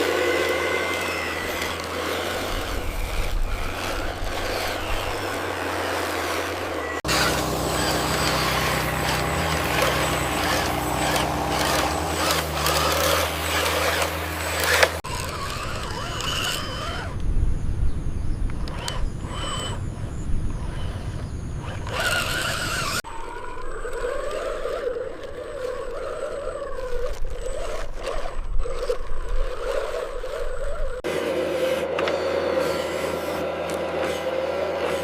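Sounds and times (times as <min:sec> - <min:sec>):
noisy rattle: 0:00.0 - 0:17.1
small electric motors humming: 0:00.0 - 0:35.0.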